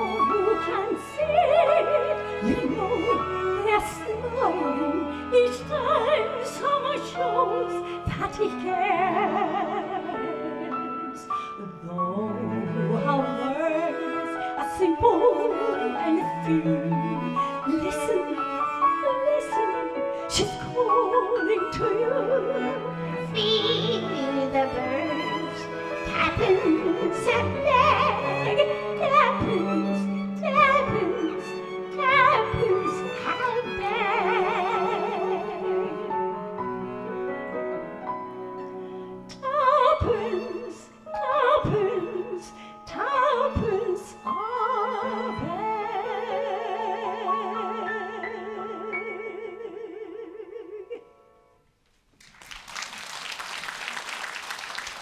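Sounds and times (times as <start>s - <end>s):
soprano singing with vibrato: 0.0s - 36.1s, 39.3s - 51.3s
violin and cello: 0.0s - 50.8s
audience applause: 52.2s - 55.0s.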